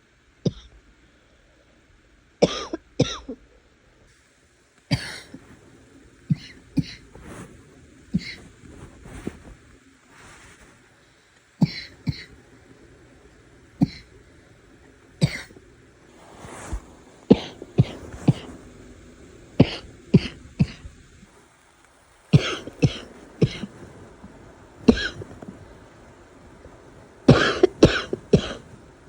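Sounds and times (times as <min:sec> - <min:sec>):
woman coughing: 0:02.4 - 0:03.4, 0:04.9 - 0:05.4, 0:06.3 - 0:07.1, 0:08.2 - 0:08.5, 0:11.6 - 0:12.4, 0:13.8 - 0:14.1, 0:15.2 - 0:15.6, 0:17.3 - 0:18.5, 0:19.6 - 0:20.9, 0:22.4 - 0:23.8, 0:24.8 - 0:25.4, 0:27.3 - 0:28.7
breath drawn in: 0:16.1 - 0:18.7.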